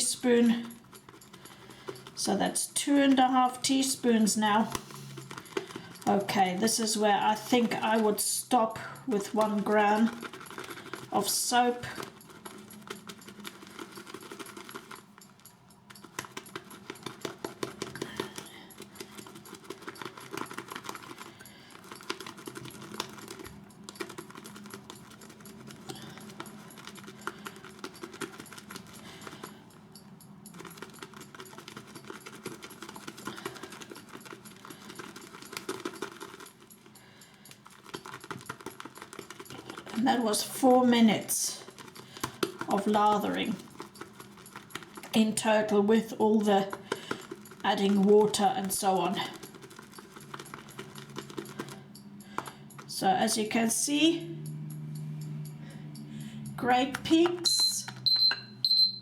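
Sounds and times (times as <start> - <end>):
brush whipping lather in bowl: 0.0 - 15.2, 30.4 - 51.9.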